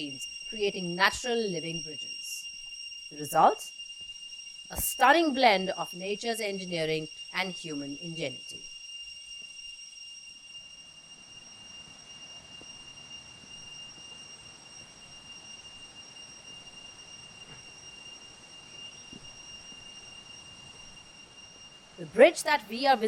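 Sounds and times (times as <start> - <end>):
background hiss: 0.0 - 23.0
insect whistling: 0.0 - 23.0.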